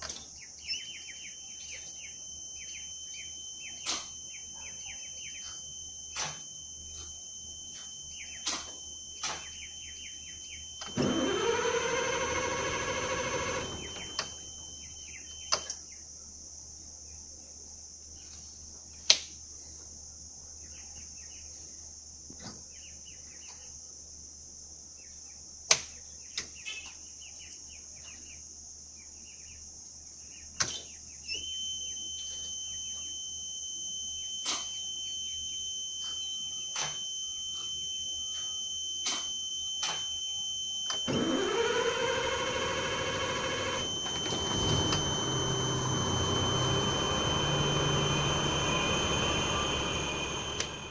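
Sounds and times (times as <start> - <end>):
steady high-pitched tone: 0.8 - 15.5, 31.4 - 50.9
starter motor cranking: 10.8 - 14.5, 40.6 - 50.9
sharp clicks: 50.5 - 50.9.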